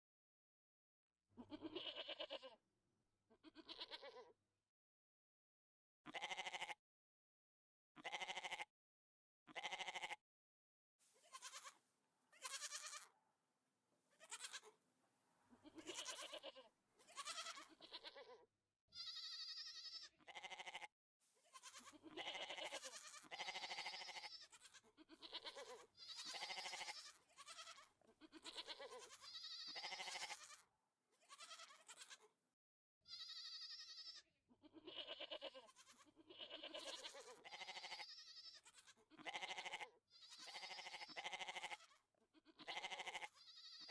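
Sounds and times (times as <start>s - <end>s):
bleat-like animal cries: 1.4s - 2.6s, 3.3s - 4.4s, 6.1s - 6.8s, 8.0s - 8.7s, 9.5s - 10.2s, 11.2s - 13.2s, 14.1s - 14.8s, 15.6s - 32.3s, 33.0s - 43.9s.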